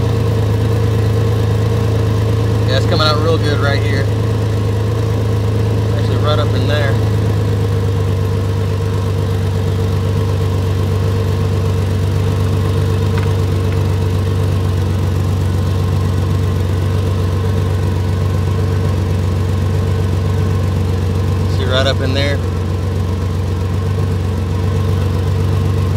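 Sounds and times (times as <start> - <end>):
engine idling: 0.0 - 25.9
exhaust leak puttering: 4.1 - 21.6.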